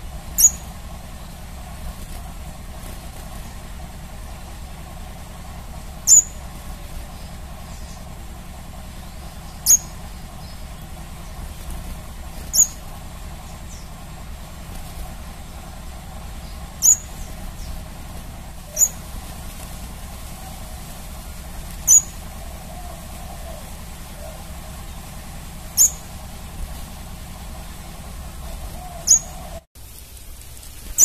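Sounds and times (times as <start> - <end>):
bird chip calls: 0.0 - 1.4, 6.0 - 8.2, 8.9 - 11.8, 12.4 - 14.0, 15.4 - 17.9, 18.6 - 19.1, 21.8 - 24.6, 25.7 - 26.2, 28.4 - 29.6
low background hum: 0.0 - 31.0.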